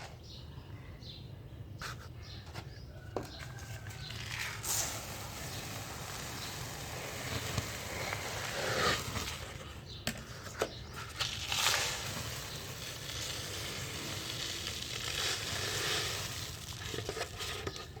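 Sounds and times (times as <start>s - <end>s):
dirt clumps crumbling and crunching: 3.3s - 9.9s, 10.9s - 18.0s.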